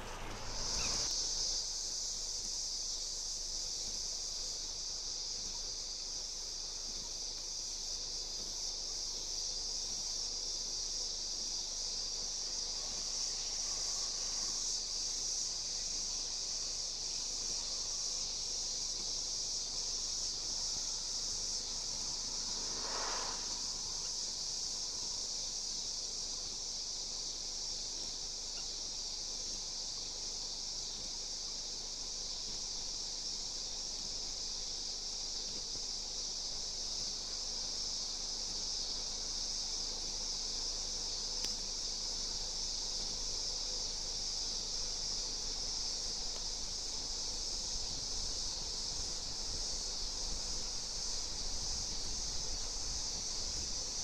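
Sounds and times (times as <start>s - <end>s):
insects chirping: 0.0s - 54.0s.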